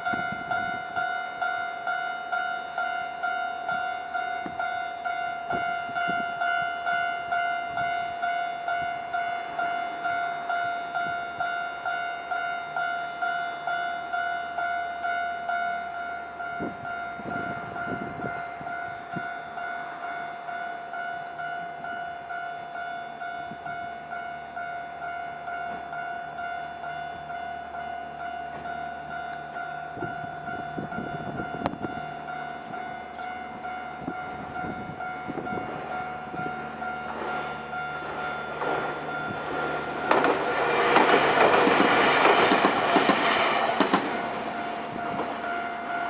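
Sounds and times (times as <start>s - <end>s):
train wheels clattering: 34.0s - 46.0s.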